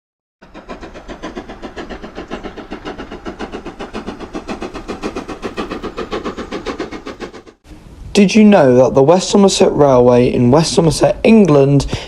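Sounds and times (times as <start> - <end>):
train running with fast beat: 0.4 - 7.6.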